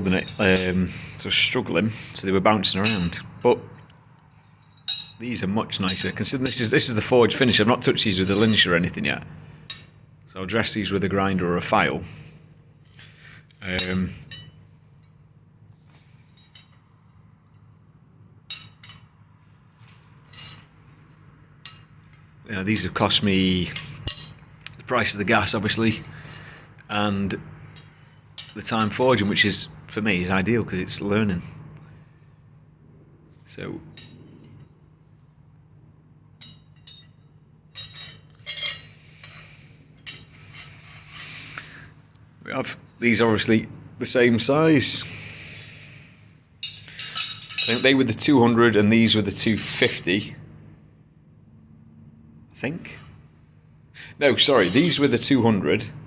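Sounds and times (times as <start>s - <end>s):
steel pieces clinking: 0.0s - 0.9s, 4.3s - 5.2s, 8.1s - 8.7s, 9.7s - 10.0s, 12.8s - 15.2s, 16.2s - 17.7s, 18.5s - 19.2s, 20.1s - 22.3s, 23.7s - 26.9s, 27.6s - 29.0s, 33.9s - 34.8s, 36.3s - 41.9s, 46.6s - 48.0s, 49.4s - 50.0s, 54.4s - 55.3s
low steady hum: 0.0s - 56.0s
steel tongs clinking: 18.5s - 19.1s, 23.7s - 24.8s, 36.4s - 41.8s, 46.6s - 48.0s.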